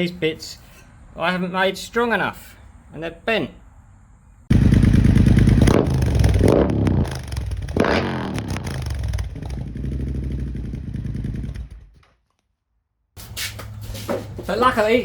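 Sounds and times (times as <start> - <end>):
motorcycle engine revving: 4.5 - 12.0.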